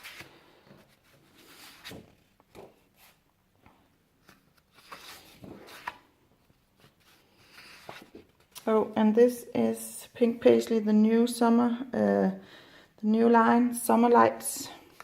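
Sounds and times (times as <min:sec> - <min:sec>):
paper rustling: 0:04.2 - 0:08.6.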